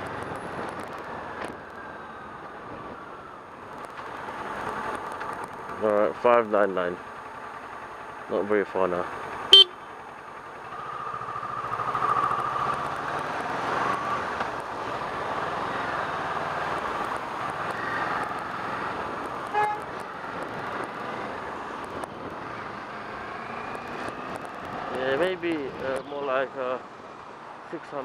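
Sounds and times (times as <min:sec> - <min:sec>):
wind and road noise: 0:00.0 - 0:28.0
motorcycle engine running: 0:08.9 - 0:12.7.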